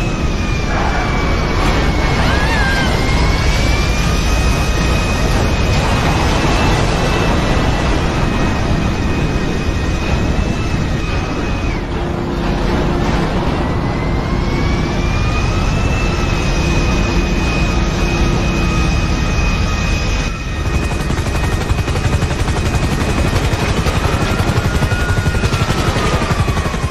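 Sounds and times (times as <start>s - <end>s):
aircraft engines running: 0.0s - 26.9s
high engine whine: 0.0s - 26.9s.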